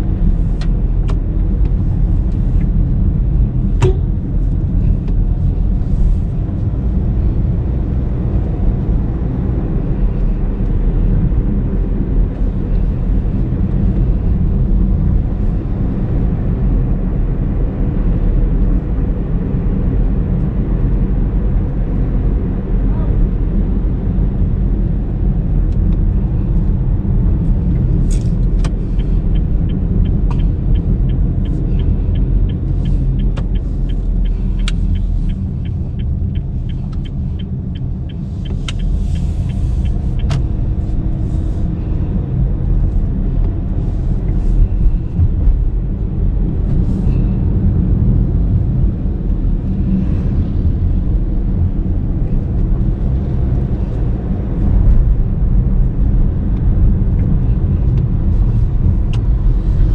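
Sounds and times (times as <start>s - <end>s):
turn signal ticking: 0.0s - 6.7s, 25.2s - 46.8s, 56.4s - 59.9s
road and engine rumble in car: 0.0s - 59.9s.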